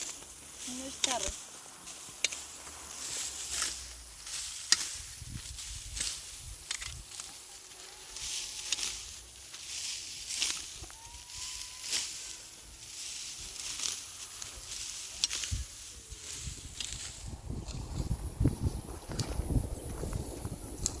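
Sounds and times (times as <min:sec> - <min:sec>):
hissing and rustling swishes: 0:00.0 - 0:21.0
faint whistled tones: 0:10.8 - 0:12.3.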